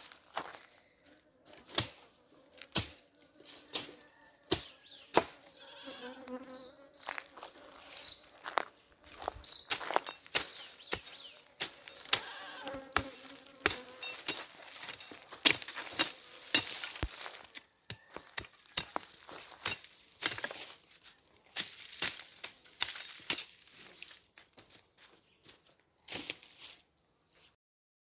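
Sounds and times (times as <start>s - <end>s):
bees buzzing: 5.5s - 9.9s, 10.6s - 17.0s.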